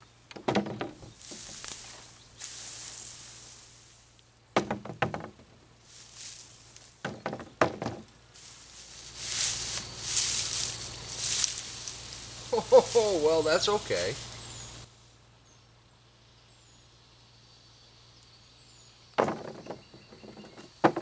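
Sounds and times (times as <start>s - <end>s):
rustling and crunching: 0.7s - 4.4s, 5.4s - 14.9s
clusters of knocks: 19.2s - 21.0s.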